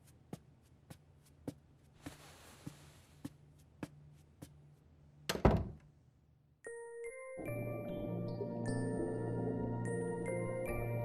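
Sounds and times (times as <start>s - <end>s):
door shutting with a thunk: 5.3s - 5.8s
soft chiming music: 6.6s - 11.0s.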